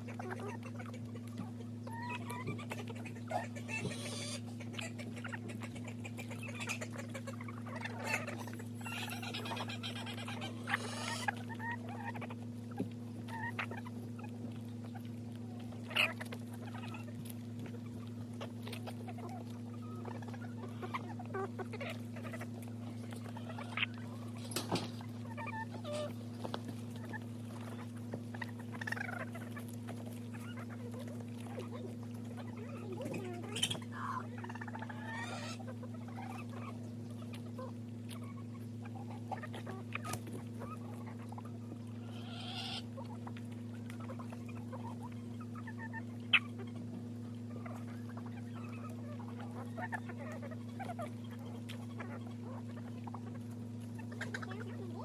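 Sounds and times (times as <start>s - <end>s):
chickens clucking: 0.0s - 55.0s
chickens pecking and scratching: 0.0s - 55.0s
steady low hum: 0.0s - 55.0s.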